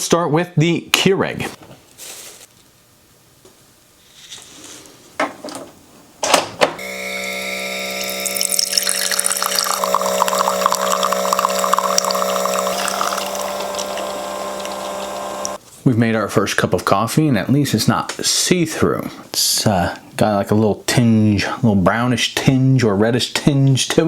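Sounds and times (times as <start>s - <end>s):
coffee maker pump humming: 6.8s - 15.6s
coffee maker clicks: 7.8s - 15.6s
coffee splashing into mug: 7.8s - 15.6s.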